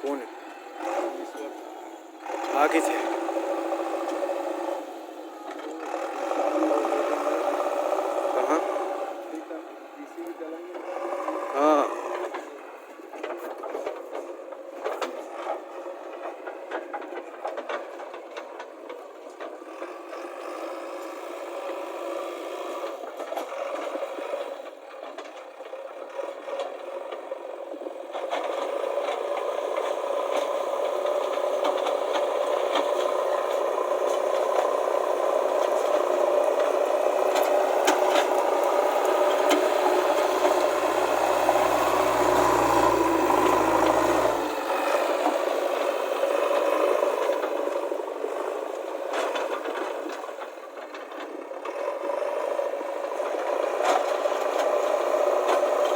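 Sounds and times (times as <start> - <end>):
rattling and scraping of gravel: 0.0 - 21.8, 22.8 - 55.9
diesel engine running: 0.0 - 55.9.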